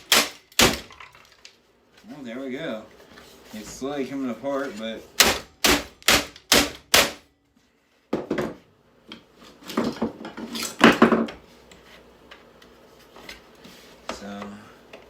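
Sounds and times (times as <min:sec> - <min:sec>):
knocks and clatter of housing: 0:09.6 - 0:11.4.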